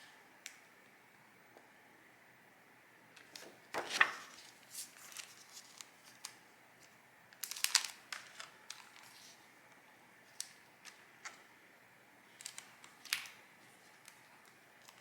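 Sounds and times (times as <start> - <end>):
packaging crinkling and rustling: 3.2 - 9.4, 12.3 - 15.0.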